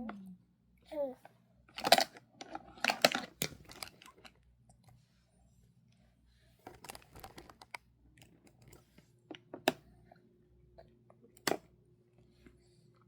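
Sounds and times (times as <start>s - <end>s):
child chewing crunchy food: 1.7s - 4.9s.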